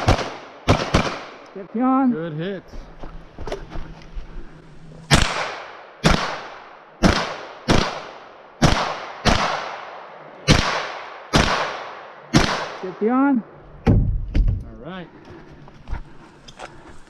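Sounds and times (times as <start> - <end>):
gunshots: 0.0 - 1.4, 5.1 - 13.0.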